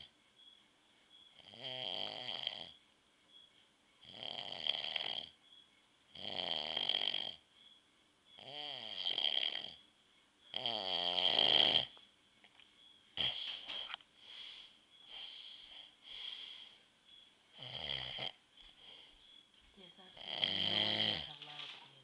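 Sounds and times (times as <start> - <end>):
man snoring: 1.4 - 2.8, 4.0 - 5.4, 6.2 - 7.4, 8.4 - 9.8, 10.5 - 11.9, 17.6 - 18.4, 20.2 - 21.3.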